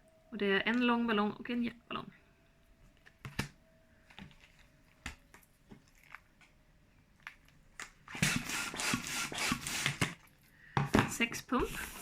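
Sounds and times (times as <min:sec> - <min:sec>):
balloon and pump clicks and taps: 0:08.1 - 0:10.3.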